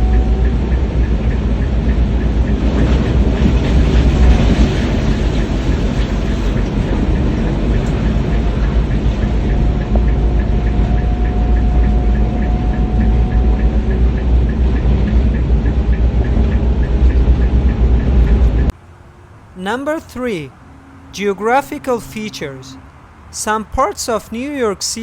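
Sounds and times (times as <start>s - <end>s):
regular clicking: 0.0s - 18.8s
train rumbling: 0.0s - 24.8s.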